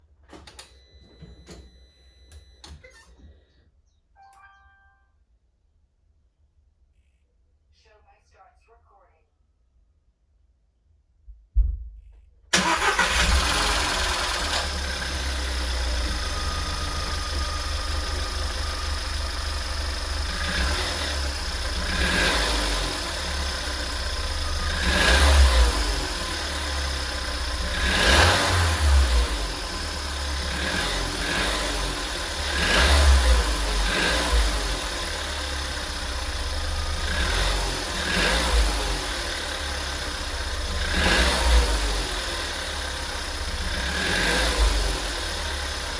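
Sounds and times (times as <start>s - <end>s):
car engine idling and revving: 12.6s - 45.9s.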